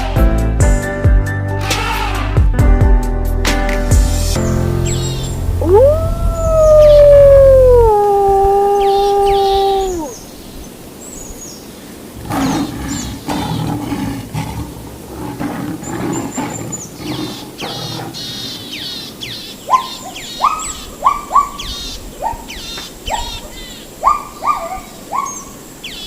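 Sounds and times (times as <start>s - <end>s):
low growling rumble: 5.5s - 10.1s
animal howl: 5.6s - 10.2s
loud rising bird calls: 5.6s - 10.4s.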